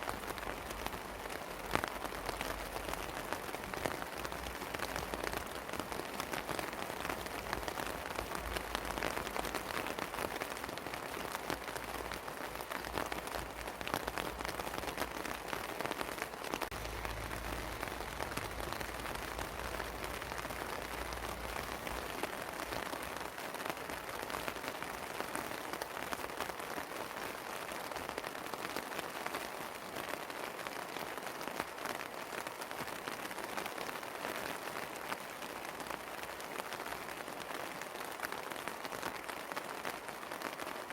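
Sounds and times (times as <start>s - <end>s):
rain falling on a terrace: 0.0s - 40.9s
low rumble: 16.7s - 22.0s.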